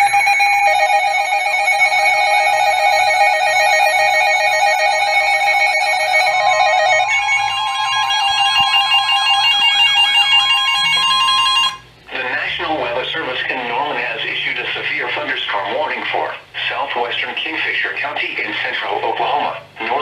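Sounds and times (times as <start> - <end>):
chirping alarm tone: 0.0 - 11.8
steady beep: 0.0 - 11.8
steady electronic alarm tones: 0.0 - 12.5
warbling alarm tone: 0.0 - 15.0.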